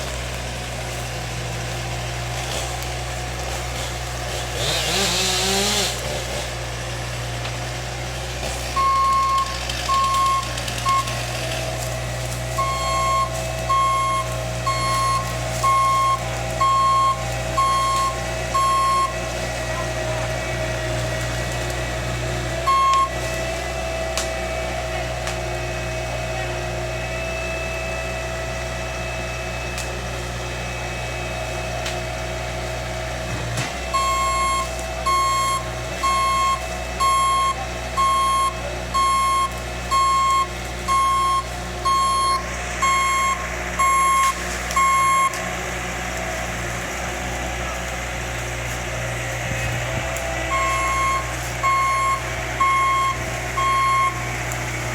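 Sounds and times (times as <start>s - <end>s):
diesel engine running: 0.0s - 54.9s
reversing alarm beeping: 8.8s - 11.3s, 12.6s - 19.2s, 22.6s - 23.3s, 33.9s - 45.4s, 50.5s - 54.3s.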